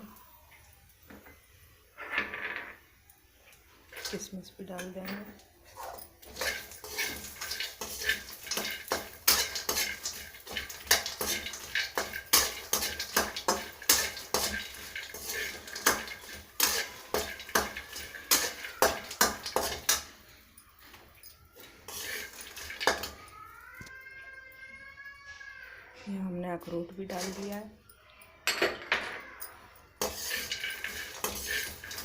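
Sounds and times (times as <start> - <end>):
spatula scraping a pan: 5.6 - 20.1, 21.8 - 23.2, 30.0 - 32.0.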